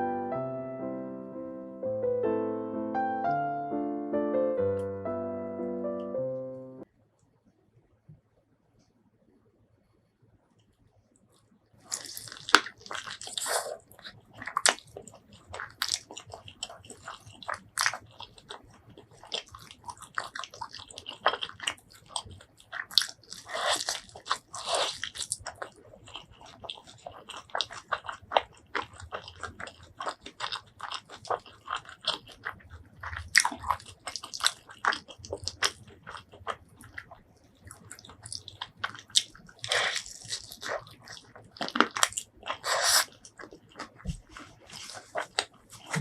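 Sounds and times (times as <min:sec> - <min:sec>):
crunchy bites of fried chicken: 0:11.8 - 0:44.4
chewing: 0:11.8 - 0:46.0.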